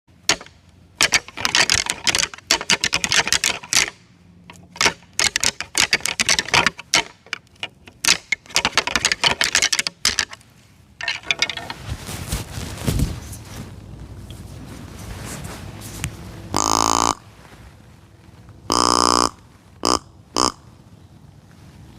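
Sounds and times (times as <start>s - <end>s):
quiet steady noise: 0.1s - 21.9s
antlers clacking together: 0.2s - 10.4s, 11.0s - 11.8s.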